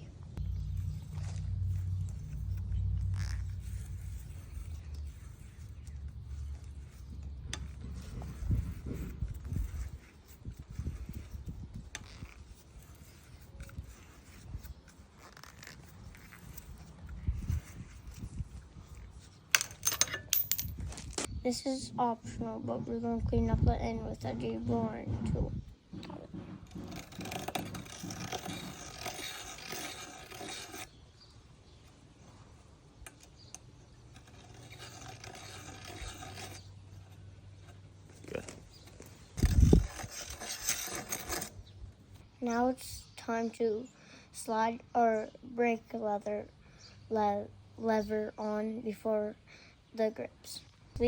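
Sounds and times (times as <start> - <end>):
deburring tool scraping metal tube: 0.7 - 19.4, 26.0 - 31.3, 33.0 - 41.7.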